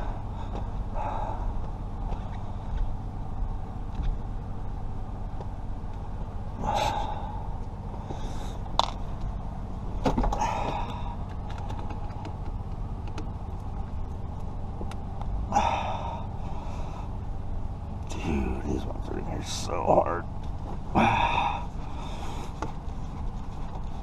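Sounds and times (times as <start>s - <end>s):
low hum: 0.0s - 24.0s
person grunting with effort: 20.9s - 21.7s.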